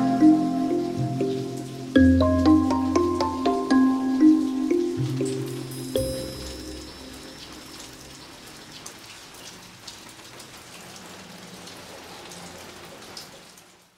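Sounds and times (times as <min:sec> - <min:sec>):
music: 0:00.0 - 0:08.1
drops ticking: 0:00.0 - 0:08.9
steady rain falling: 0:00.0 - 0:13.9.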